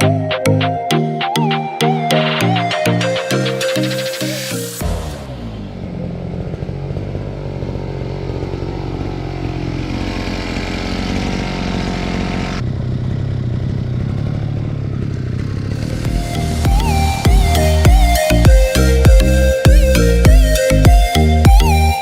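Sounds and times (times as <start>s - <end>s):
brush cutter engine cutting: 4.8s - 12.6s.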